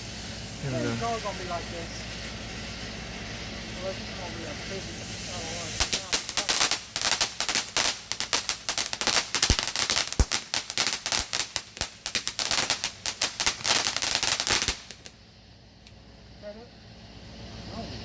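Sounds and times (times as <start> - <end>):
firework crackling pops: 0.0 - 16.0
heavy firework thumps: 5.8 - 15.2.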